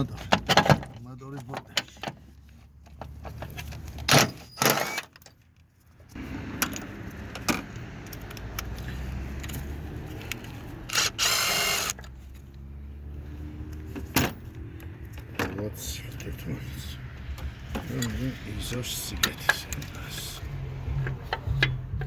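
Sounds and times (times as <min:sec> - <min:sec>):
metal bolts and tools clinking: 0:06.6 - 0:12.1.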